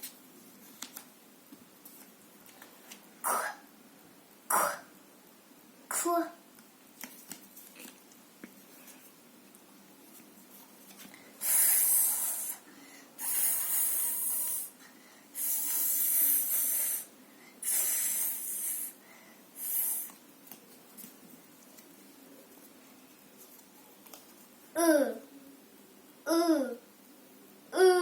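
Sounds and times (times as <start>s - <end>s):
person making hissing speech sounds: 11.4s - 12.6s, 13.2s - 14.8s, 15.4s - 19.0s, 19.6s - 20.2s.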